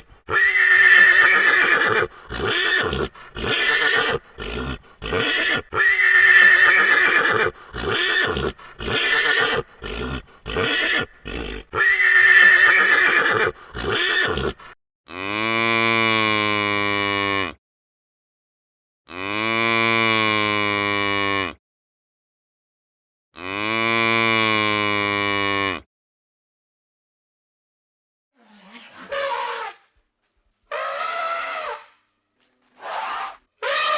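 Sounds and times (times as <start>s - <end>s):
horse neighing: 0.0s - 14.8s
cow mooing: 33.6s - 33.9s.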